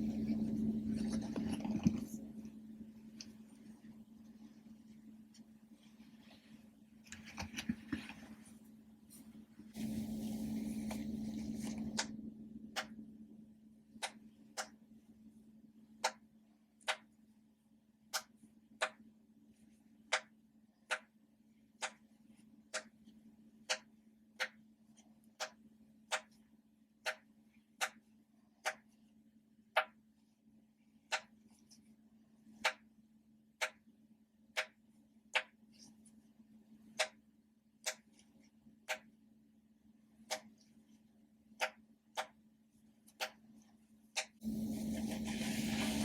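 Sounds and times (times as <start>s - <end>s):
rustling handling noise: 0.0s - 12.0s, 44.4s - 46.0s
faint steady hum: 0.0s - 46.0s.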